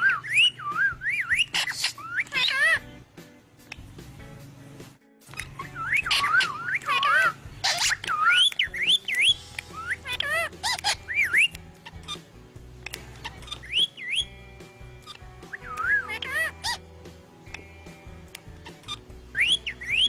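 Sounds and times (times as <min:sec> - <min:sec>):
parrot whistling: 0:00.0 - 0:02.8, 0:05.4 - 0:12.2, 0:12.9 - 0:14.4, 0:15.1 - 0:16.8, 0:18.6 - 0:20.0.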